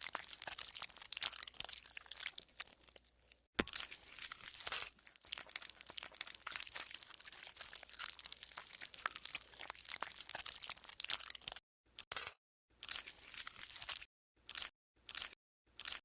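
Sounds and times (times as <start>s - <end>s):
slime crackling and squelching: 3.8s - 11.6s.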